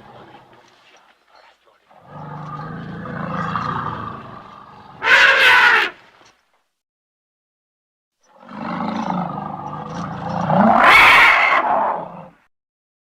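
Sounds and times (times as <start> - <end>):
low creature roar: 2.0 - 6.0, 8.3 - 12.4.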